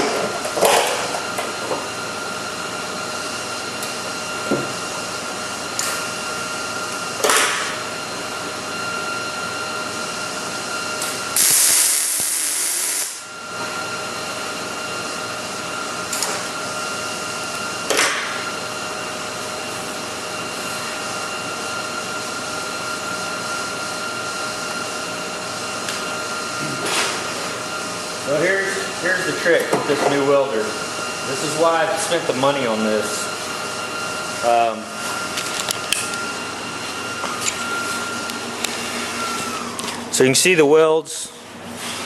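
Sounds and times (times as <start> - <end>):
welding sizzle: 11.4 - 13.2.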